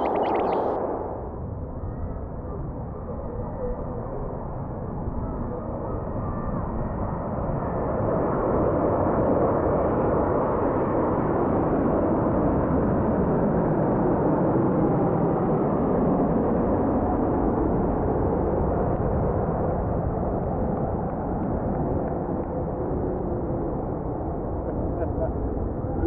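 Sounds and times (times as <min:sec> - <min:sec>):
aircraft engines roaring: 0:00.0 - 0:00.8, 0:17.3 - 0:26.0.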